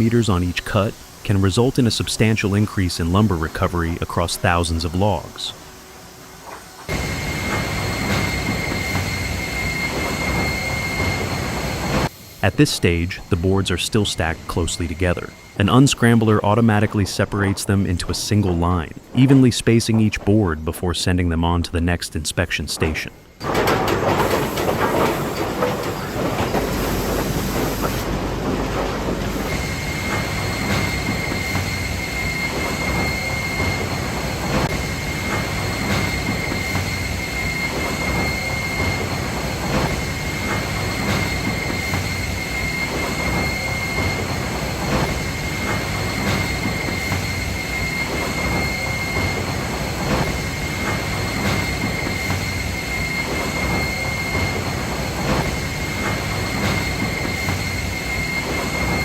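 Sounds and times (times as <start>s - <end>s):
steady high whine: 0.0s - 19.8s
chain conveyors running: 23.4s - 31.5s.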